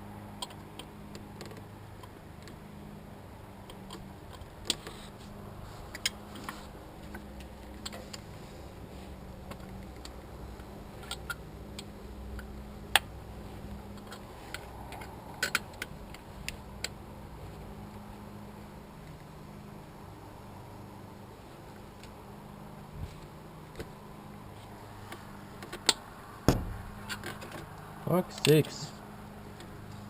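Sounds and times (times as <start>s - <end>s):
steady low hum: 26.2s - 29.2s.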